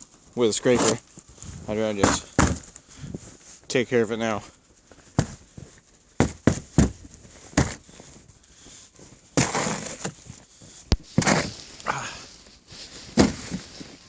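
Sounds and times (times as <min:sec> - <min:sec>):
snow scraped off a car: 0:00.6 - 0:02.4, 0:09.4 - 0:10.2, 0:11.1 - 0:14.0.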